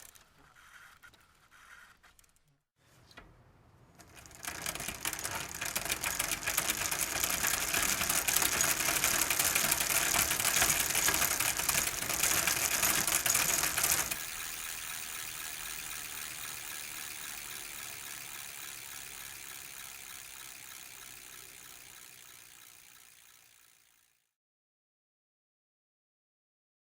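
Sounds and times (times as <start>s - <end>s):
bicycle freewheel ticking: 4.0s - 24.3s.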